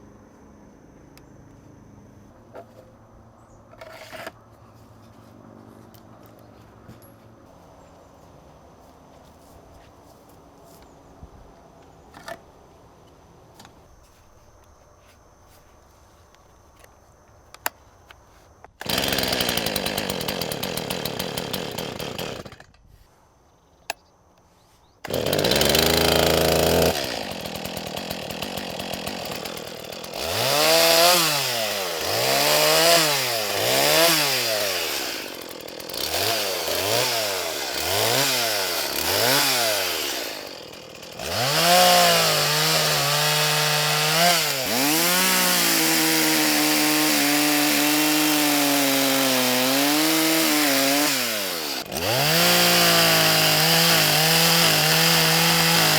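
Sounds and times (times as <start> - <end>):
chainsaw engine revving: 18.8 - 22.7, 25.0 - 55.9.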